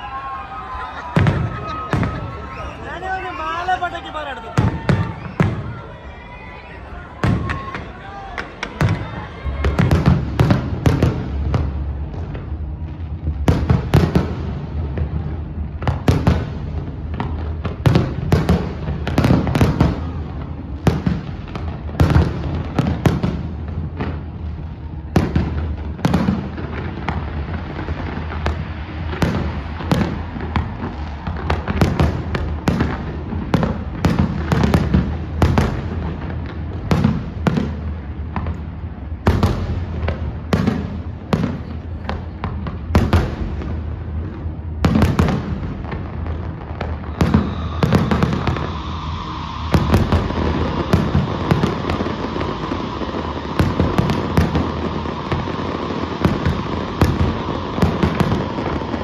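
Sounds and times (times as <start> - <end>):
fireworks bursting and crackling: 0.0 - 59.0
low rumble: 45.4 - 57.8.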